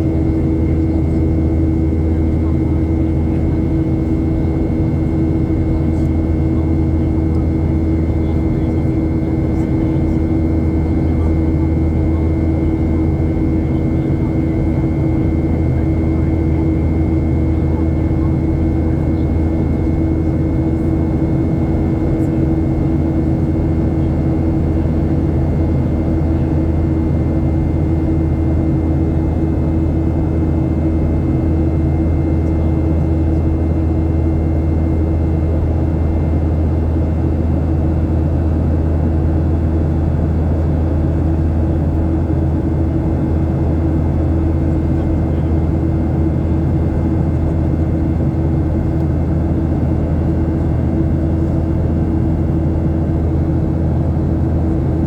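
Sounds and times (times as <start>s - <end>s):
airplane cabin drone: 0.0s - 55.0s.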